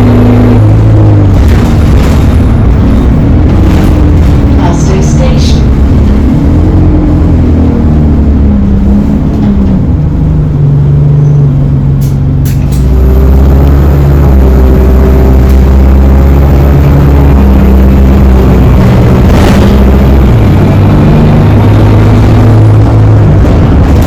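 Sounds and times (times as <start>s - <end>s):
bus engine running: 0.0s - 24.0s
drive axle whine: 0.0s - 24.0s.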